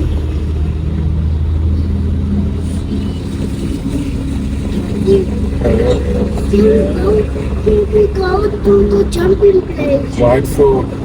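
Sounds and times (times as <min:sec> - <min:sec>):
car engine hum: 0:00.0 - 0:11.0
road noise drone: 0:00.0 - 0:11.0.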